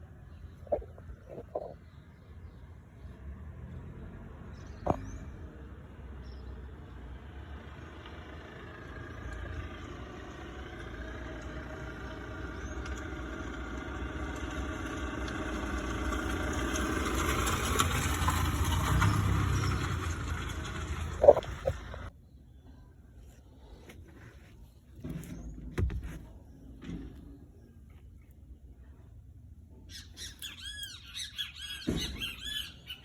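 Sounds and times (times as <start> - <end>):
car engine rumbling: 0.3 - 22.1.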